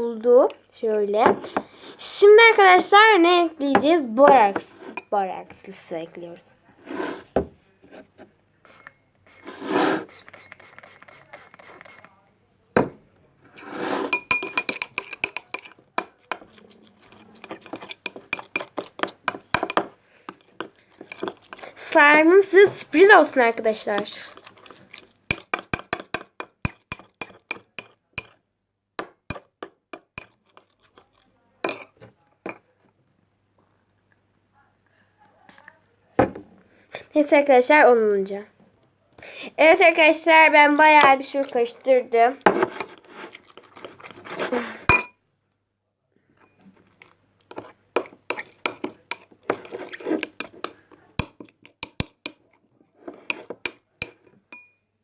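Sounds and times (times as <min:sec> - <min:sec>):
spoon stirring slime: 0:00.2 - 0:07.3, 0:08.6 - 0:12.3, 0:13.6 - 0:28.4, 0:29.0 - 0:32.7, 0:39.6 - 0:45.1, 0:46.4 - 0:54.8
spoon clinking against bowl: 0:14.2 - 0:19.9, 0:25.3 - 0:28.4, 0:29.3 - 0:32.6, 0:44.9 - 0:45.2, 0:47.6 - 0:52.5, 0:53.3 - 0:54.8.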